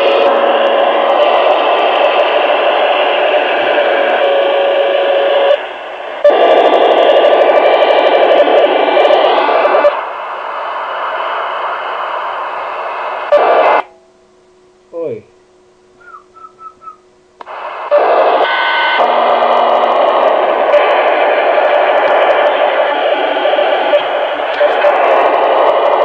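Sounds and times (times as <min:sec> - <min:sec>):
steady interference tone: 0:00.0 - 0:26.0
radio digital interference noise: 0:06.2 - 0:10.0, 0:11.0 - 0:13.8, 0:17.4 - 0:26.0.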